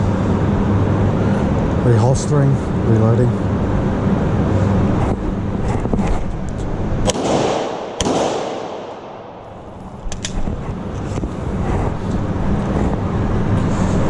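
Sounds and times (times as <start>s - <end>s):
steady background noise: 0.0s - 14.0s
handgun shots with echo: 7.0s - 9.4s.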